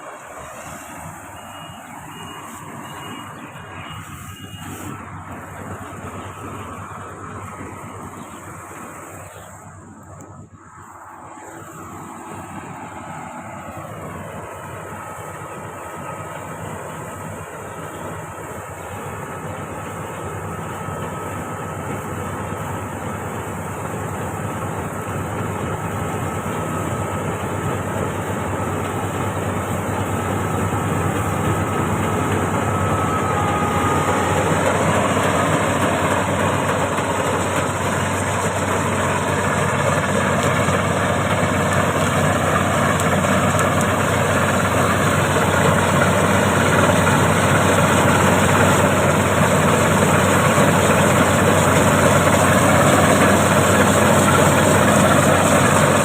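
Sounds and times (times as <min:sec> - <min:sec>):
combine harvester running: 0:00.0 - 0:56.0.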